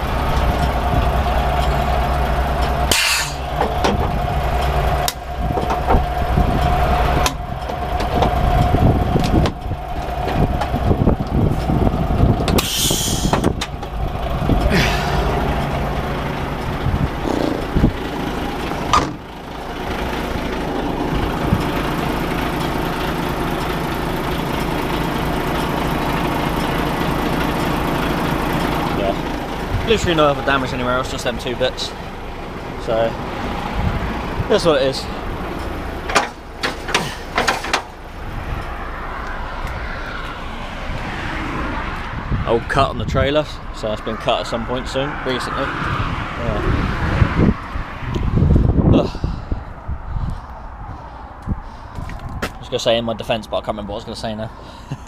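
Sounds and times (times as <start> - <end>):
diesel engine idling: 0.0 - 55.0
knocks and rattles: 2.6 - 12.6, 35.5 - 38.0
compressed air hiss: 2.9 - 3.5, 12.6 - 13.5.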